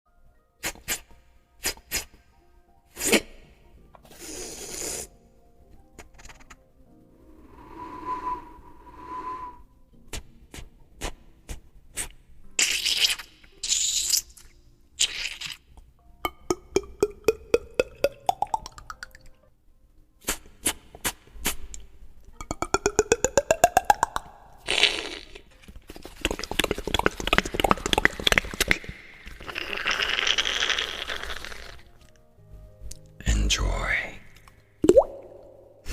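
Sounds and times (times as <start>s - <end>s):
beatbox hiss bursts: 0.6s - 2.2s, 3.0s - 3.2s, 4.1s - 5.1s, 12.0s - 12.8s, 20.2s - 21.7s, 24.7s - 25.4s
beatbox mouth hiss: 0.6s - 2.2s, 3.0s - 3.3s, 4.1s - 5.1s, 10.1s - 14.4s, 20.2s - 21.8s, 22.5s - 31.8s
beatbox sharp clicks: 22.4s - 25.4s
beatbox mouth clicks and rattles: 22.4s - 31.8s
beatbox held noisy tone: 22.5s - 25.1s.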